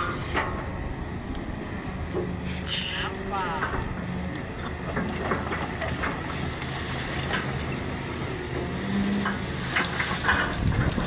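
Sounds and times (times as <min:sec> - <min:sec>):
diesel engine running: 0:00.0 - 0:11.0
knocks and clanks: 0:03.4 - 0:07.9, 0:08.5 - 0:11.0.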